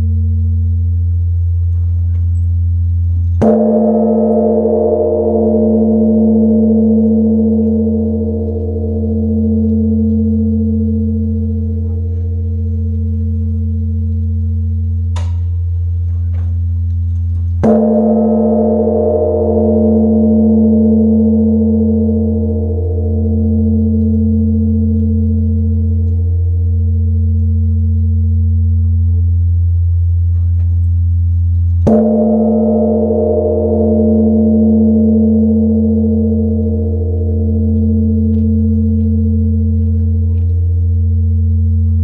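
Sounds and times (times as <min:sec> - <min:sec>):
deep temple bell ringing: 0:00.0 - 0:42.0.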